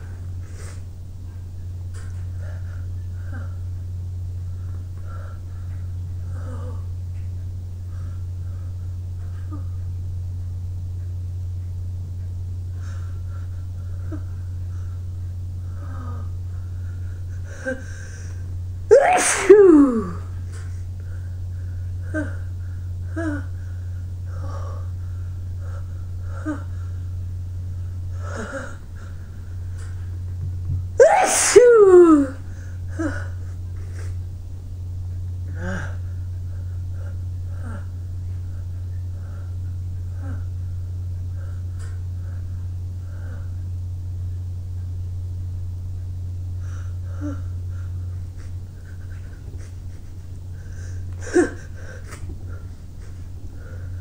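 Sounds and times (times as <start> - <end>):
steady low hum: 0.0 - 54.0
person sneezing: 18.9 - 20.2, 31.0 - 32.4.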